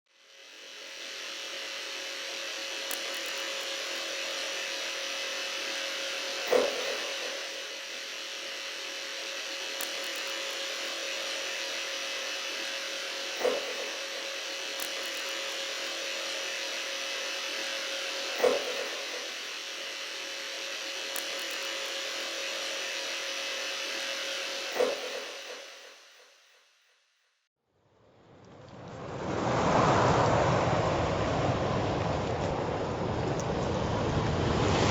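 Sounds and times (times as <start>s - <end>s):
small motor buzzing hum: 0.1s - 27.2s.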